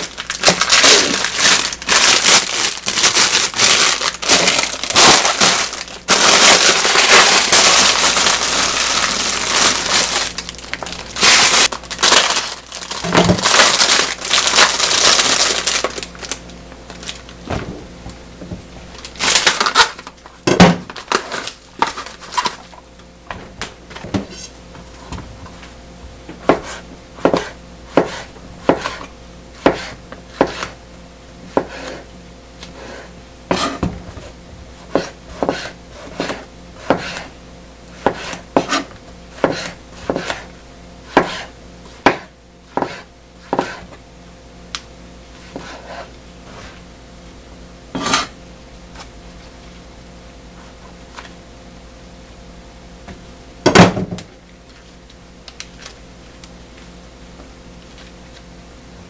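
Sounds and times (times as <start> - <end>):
knife chopping on cutting board: 26.3 - 30.8, 31.5 - 32.0, 32.7 - 34.3, 34.9 - 37.3, 38.0 - 40.5, 41.1 - 44.0, 45.5 - 46.7, 48.0 - 48.3.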